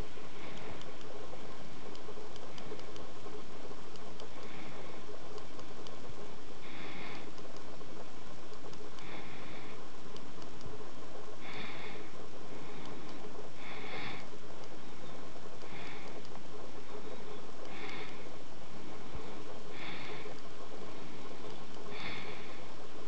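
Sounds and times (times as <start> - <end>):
room noise: 0.0 - 23.0
soft hiss: 0.0 - 23.0.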